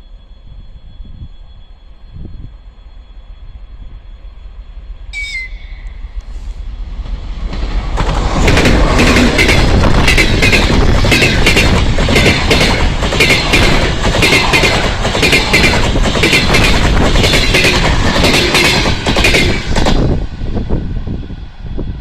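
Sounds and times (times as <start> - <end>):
train rumble: 0.0 - 22.0
train wheels clacking over rail joints: 7.5 - 20.1.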